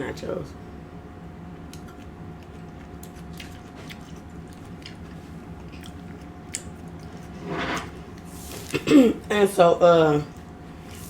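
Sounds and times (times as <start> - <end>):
person chewing food: 1.6 - 8.8.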